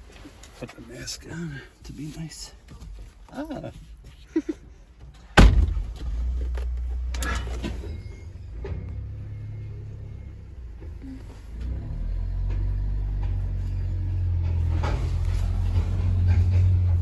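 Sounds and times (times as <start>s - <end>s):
vehicle rumble: 4.8s - 17.0s.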